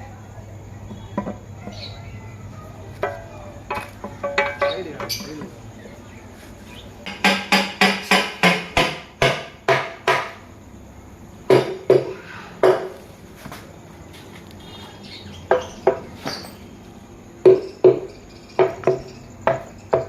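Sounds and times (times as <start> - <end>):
metal tools knocking together: 3.0 - 5.5.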